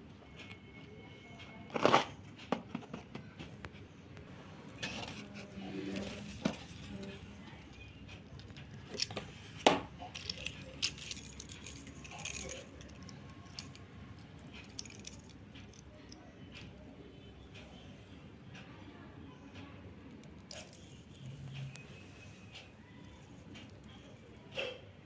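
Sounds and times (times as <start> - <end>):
light clicks and clinks: 4.7 - 17.8, 19.6 - 25.0.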